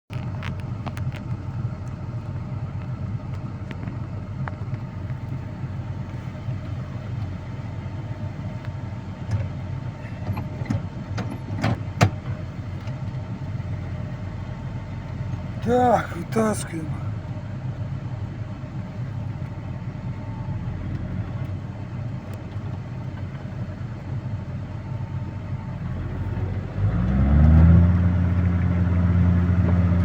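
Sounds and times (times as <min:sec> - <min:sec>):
vehicle engine humming: 0:18.6 - 0:30.0.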